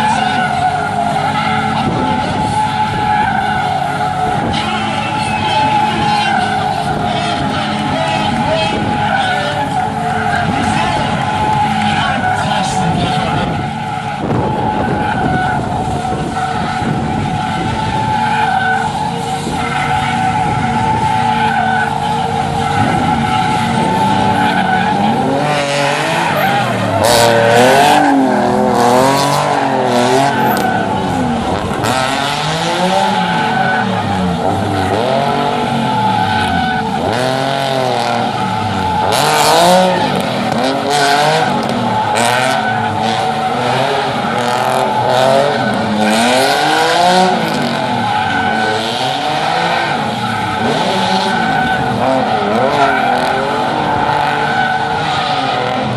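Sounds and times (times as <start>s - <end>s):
car engine revving: 0.0s - 55.9s
tyres squealing: 0.0s - 55.9s.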